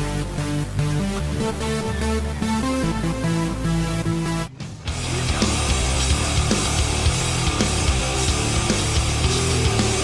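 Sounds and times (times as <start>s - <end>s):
heavy rock music: 0.0s - 10.0s
pounding drum beat: 4.6s - 10.0s.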